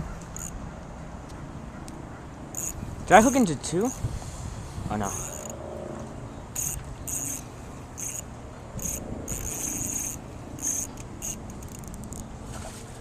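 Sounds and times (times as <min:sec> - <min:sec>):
fishing reel buzzing: 0:00.2 - 0:00.6, 0:02.5 - 0:04.1, 0:05.0 - 0:05.6, 0:06.5 - 0:12.3.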